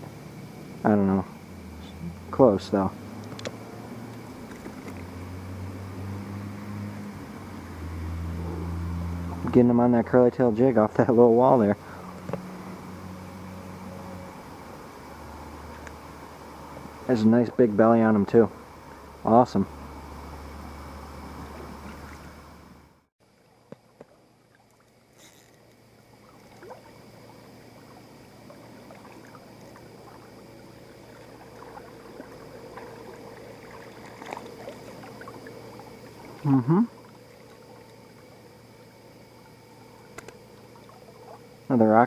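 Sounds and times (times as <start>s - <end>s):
river water rushing: 3.0s - 9.4s, 26.2s - 41.5s
small clicks: 3.2s - 5.1s.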